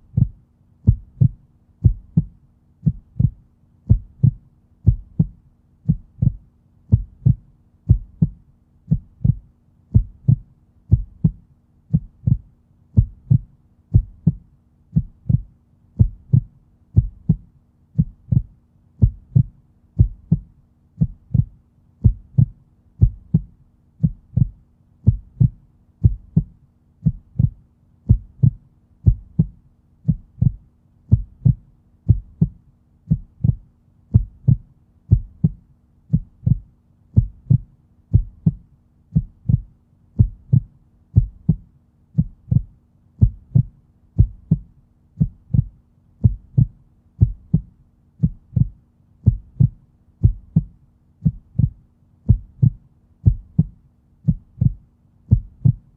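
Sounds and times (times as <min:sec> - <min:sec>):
heartbeat thumps: 0:00.0 - 0:55.9.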